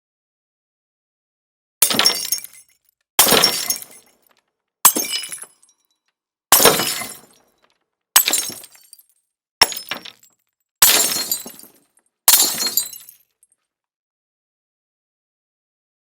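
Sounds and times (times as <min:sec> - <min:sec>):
glass shattering: 0:01.8 - 0:04.3, 0:04.9 - 0:05.7, 0:06.5 - 0:07.4, 0:08.2 - 0:13.3.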